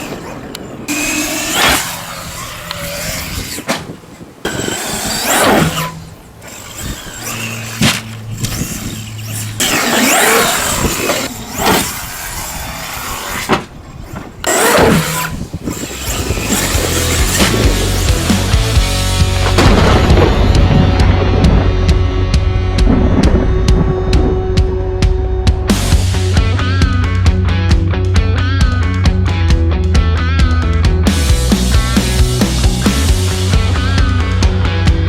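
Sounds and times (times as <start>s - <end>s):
electric motor whine: 0.0s - 3.7s, 4.4s - 27.2s
tyres rushing: 0.0s - 29.2s.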